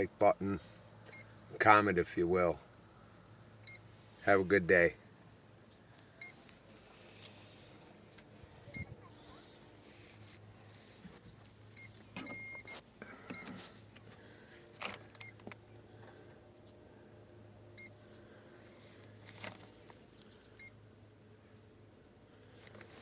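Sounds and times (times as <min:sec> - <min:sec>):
short electronic beeps: 0:08.7 - 0:09.1, 0:11.8 - 0:13.5.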